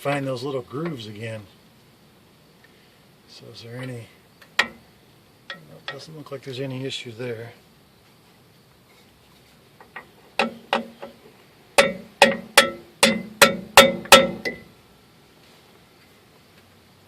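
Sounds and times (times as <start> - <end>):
hammer striking metal: 11.8 - 14.7.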